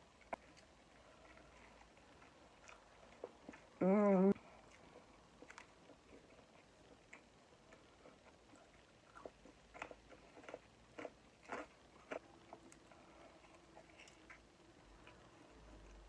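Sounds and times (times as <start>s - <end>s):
mouth chewing and smacking: 4.5s - 16.0s.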